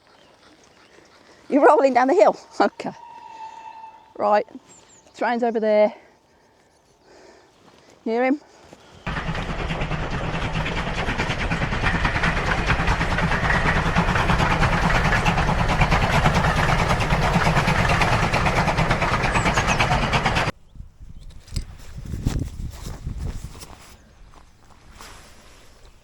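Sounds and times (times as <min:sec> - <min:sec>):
train engine rumble: 0:09.1 - 0:20.5.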